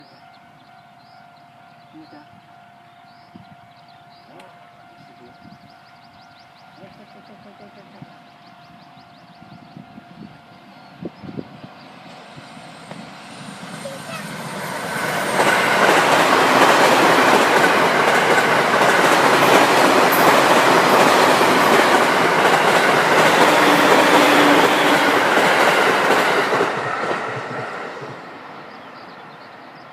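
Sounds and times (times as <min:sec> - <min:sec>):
train wheels clattering on rails: 0:11.8 - 0:29.1.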